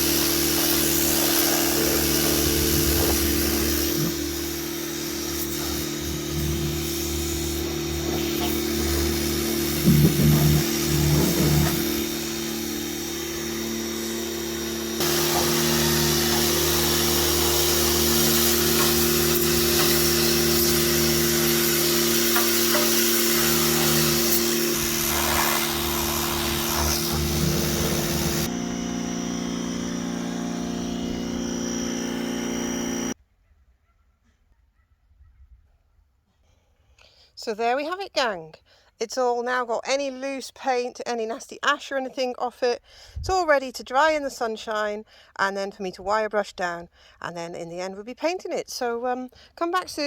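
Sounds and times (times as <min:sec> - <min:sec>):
water jet hissing on metal: 0:00.0 - 0:28.5
pressure washer motor hum: 0:00.0 - 0:33.2.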